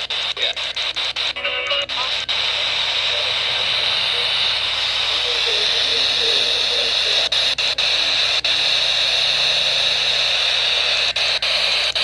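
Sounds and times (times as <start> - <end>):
radio static hiss: 0.0 - 12.0.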